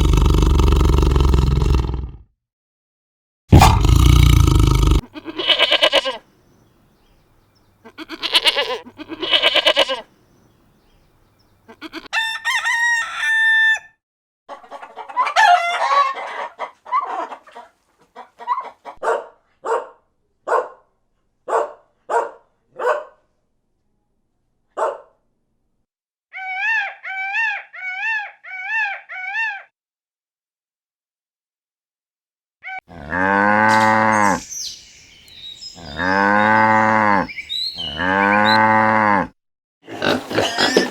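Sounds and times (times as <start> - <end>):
hen clucking: 5.1 - 6.2, 7.8 - 10.0, 14.5 - 19.0, 33.7 - 38.6
rooster crowing: 12.1 - 14.0, 15.2 - 16.6, 35.3 - 38.6.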